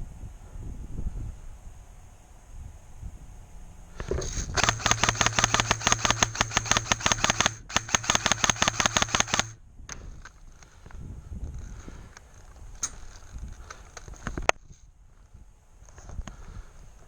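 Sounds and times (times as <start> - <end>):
airsoft rifle firing full auto: 4.0 - 14.6
gun motor whine: 4.0 - 17.0.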